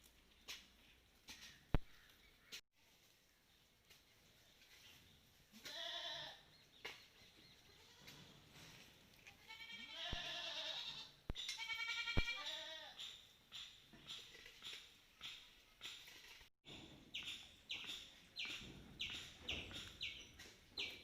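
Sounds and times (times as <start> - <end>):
goat bleating: 5.6 - 6.4, 7.6 - 8.3, 9.3 - 13.0.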